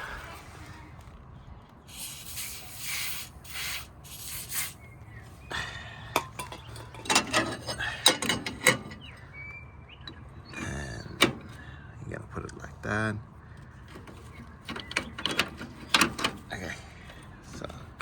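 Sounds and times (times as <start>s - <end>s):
aerosol spray hissing: 1.9s - 4.8s
metallic clicks and knocks: 6.2s - 9.2s, 10.1s - 11.6s, 13.8s - 18.0s.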